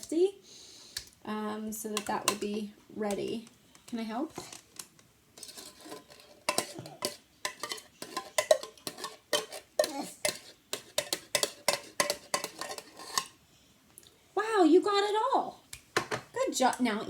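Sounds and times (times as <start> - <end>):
spoon scraping and clinking container: 5.4 - 13.4.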